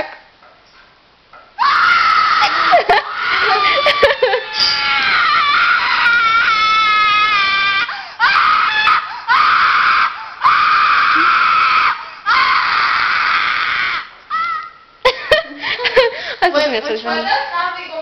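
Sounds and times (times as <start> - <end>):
woman screaming ringtone: 3.7 - 5.4.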